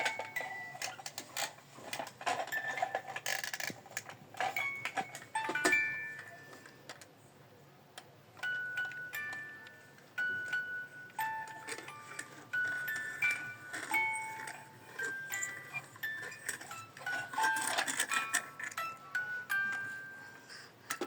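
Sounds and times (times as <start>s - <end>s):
held chime-like notes: 8.4s - 20.7s.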